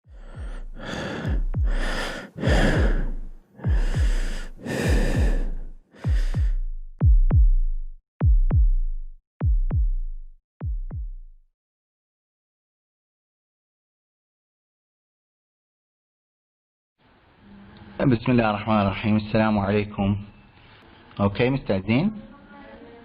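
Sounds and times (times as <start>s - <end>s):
synthesized kick-drum thumps: 0.1s - 11.5s.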